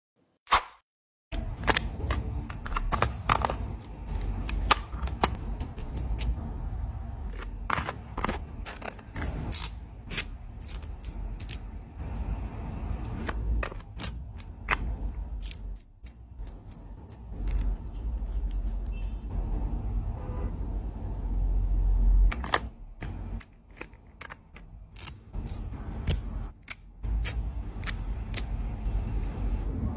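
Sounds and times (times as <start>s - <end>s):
metal parts clicking and snapping: 1.3s - 6.4s, 7.3s - 12.3s, 13.0s - 19.1s, 22.3s - 29.6s.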